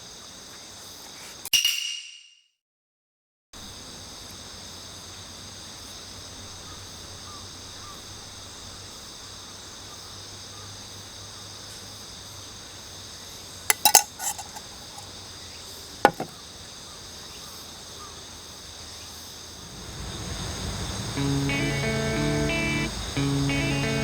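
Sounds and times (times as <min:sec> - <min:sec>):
insects chirping: 0:00.0 - 0:01.4, 0:03.6 - 0:24.0
sharp knocks: 0:16.1 - 0:16.3.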